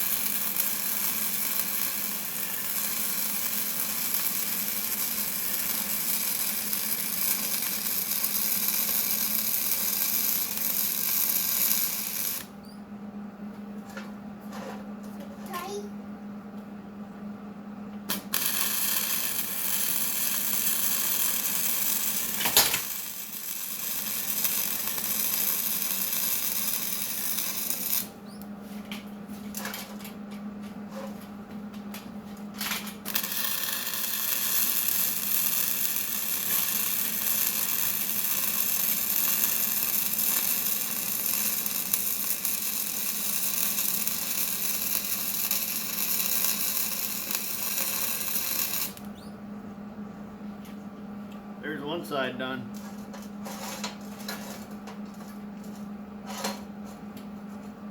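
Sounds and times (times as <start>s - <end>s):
arc welding hiss: 0.0s - 12.5s, 18.1s - 28.1s, 33.1s - 49.1s.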